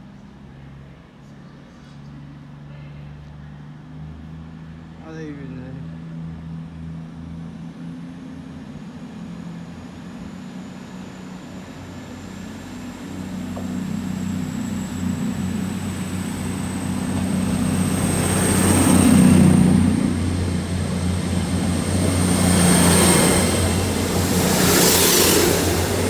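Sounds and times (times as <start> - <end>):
diesel train engine drone: 5.7 - 26.0
high whine rising in pitch: 10.8 - 26.0.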